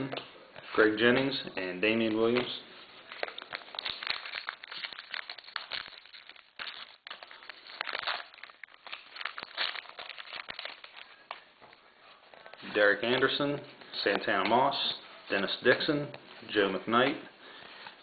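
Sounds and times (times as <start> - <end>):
card pack wrapper crinkling: 3.0 - 12.6.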